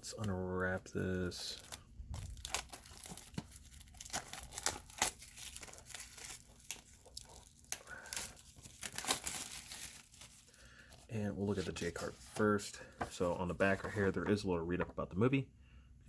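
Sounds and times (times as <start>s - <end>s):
plastic wrap tearing and crinkling: 1.3s - 11.8s.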